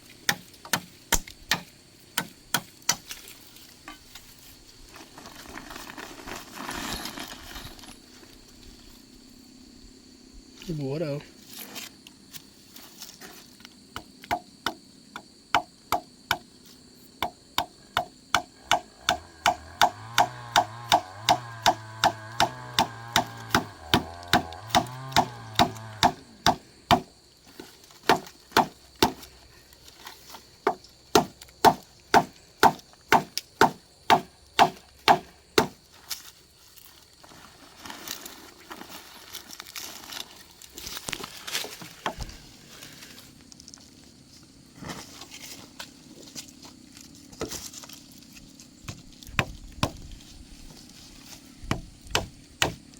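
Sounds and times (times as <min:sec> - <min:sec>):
blade chopping wood: 0:00.2 - 0:03.3, 0:14.0 - 0:14.8, 0:17.2 - 0:27.1, 0:28.0 - 0:29.3, 0:30.6 - 0:35.8, 0:48.8 - 0:50.1, 0:51.6 - 0:52.9
rustling: 0:02.9 - 0:09.1, 0:11.3 - 0:13.8, 0:29.2 - 0:31.0, 0:35.8 - 0:52.0.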